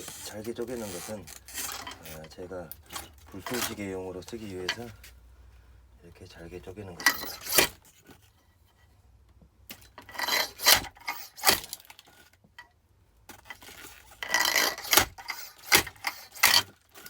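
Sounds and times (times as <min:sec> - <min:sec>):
wood scraping: 0:00.0 - 0:05.2, 0:06.8 - 0:08.4, 0:10.0 - 0:12.1, 0:13.4 - 0:17.0.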